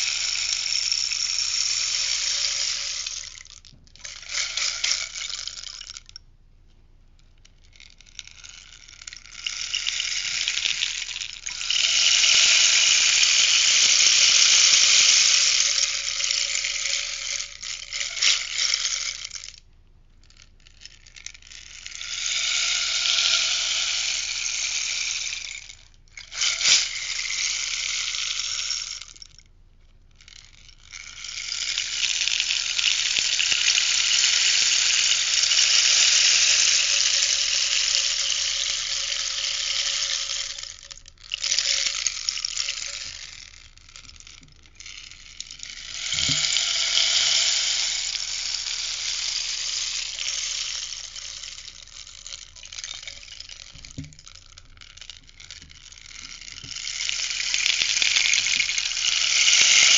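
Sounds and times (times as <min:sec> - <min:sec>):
rainstick pellets pattering: 0:00.0 - 0:06.2, 0:07.4 - 0:29.5, 0:30.2 - 0:59.9.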